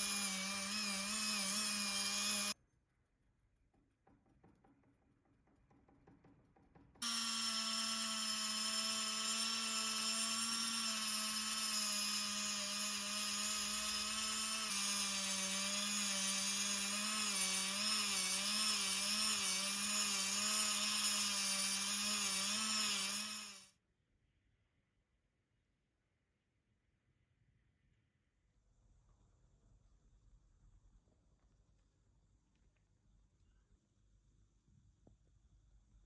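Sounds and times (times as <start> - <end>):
handheld power tool whining: 0.0 - 2.6, 7.0 - 23.7.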